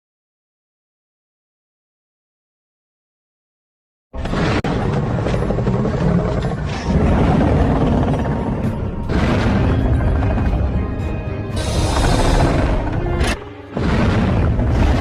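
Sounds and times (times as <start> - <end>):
loud dense music: 6.9 - 15.0.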